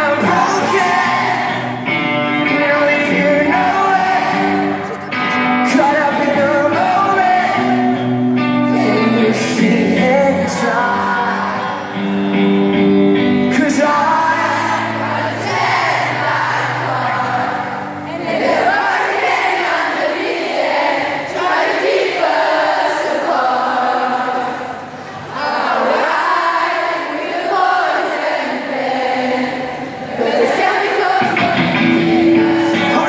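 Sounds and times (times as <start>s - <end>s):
person singing: 0.0s - 12.4s, 13.2s - 18.8s, 30.2s - 33.0s
pop-rock band playing: 0.0s - 18.1s, 31.0s - 33.0s.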